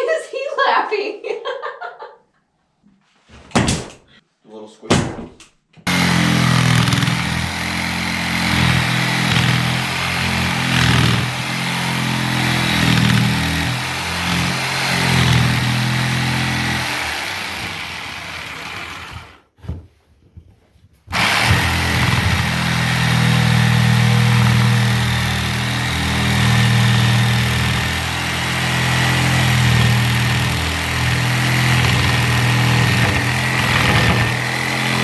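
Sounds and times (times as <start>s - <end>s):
small engine running: 5.9s - 19.4s, 21.1s - 35.0s.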